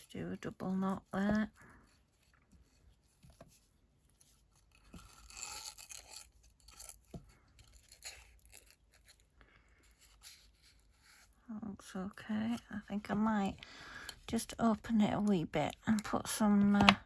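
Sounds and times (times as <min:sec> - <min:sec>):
ribbon rustling and scraping: 0:00.0 - 0:13.6.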